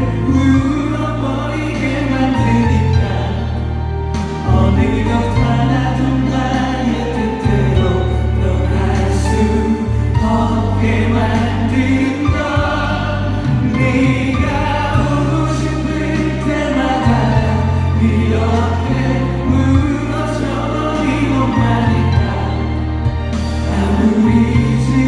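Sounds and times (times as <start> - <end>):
instrumental backing: 0.0 - 25.0
long held bass notes: 0.0 - 25.0
person singing: 0.0 - 25.0.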